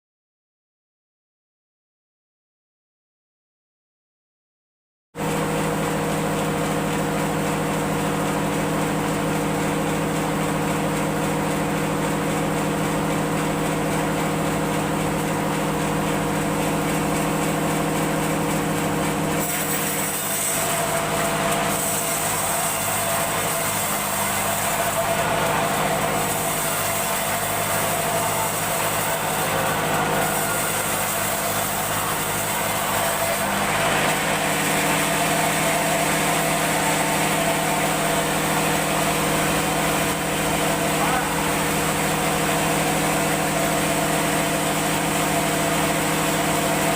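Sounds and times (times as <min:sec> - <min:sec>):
woodworking machine humming: 0:05.2 - 0:46.9.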